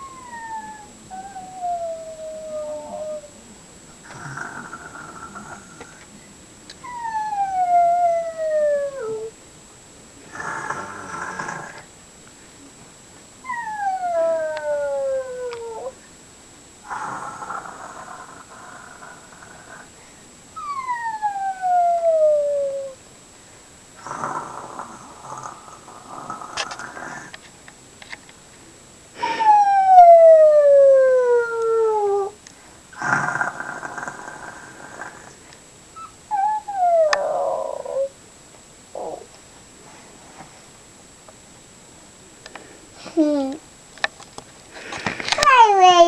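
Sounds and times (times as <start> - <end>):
child pretend snoring: 0.0 - 3.3, 4.0 - 6.1, 10.2 - 11.8, 16.8 - 20.0, 24.0 - 27.4, 31.3 - 38.1, 39.0 - 39.4, 44.8 - 46.0.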